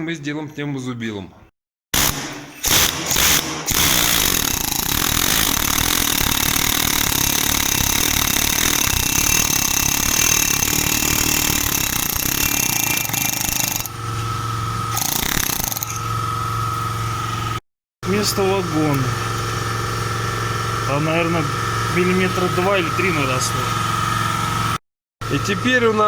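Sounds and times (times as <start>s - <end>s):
pneumatic air chisel hammering: 2.0s - 16.2s.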